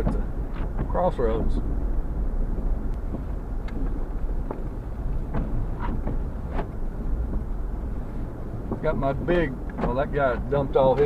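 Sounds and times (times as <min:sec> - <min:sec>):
engine and tyres rumbling: 0:00.0 - 0:11.0
short knocks and clicks: 0:02.6 - 0:07.5, 0:08.6 - 0:10.1.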